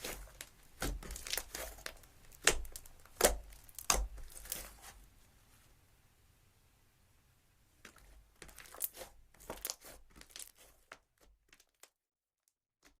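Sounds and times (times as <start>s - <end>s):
slime crackling and popping: 0.0s - 4.8s, 7.9s - 11.9s.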